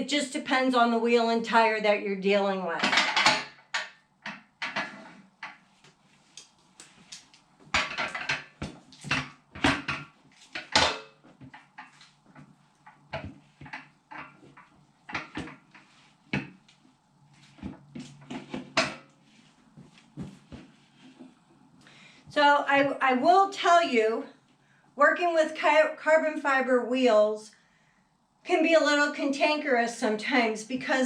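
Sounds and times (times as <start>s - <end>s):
metal clanks and knocks: 7.7s - 11.9s.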